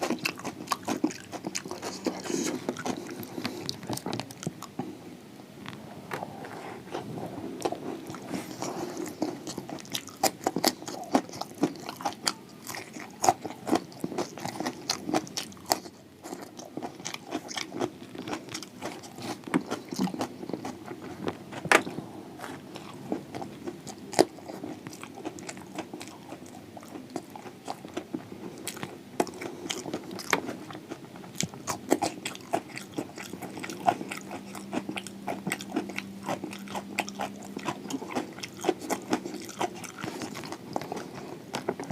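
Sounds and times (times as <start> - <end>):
chewing crispy food: 0.0 - 5.0, 6.1 - 41.9.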